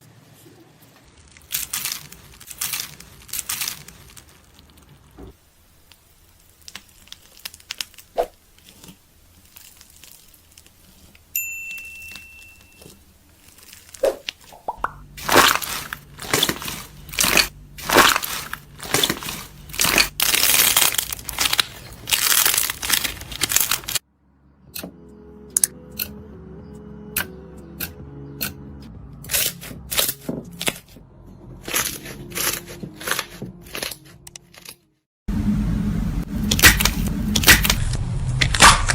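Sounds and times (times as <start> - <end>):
slime squeezed by hand crackling: 12.8 - 24.0.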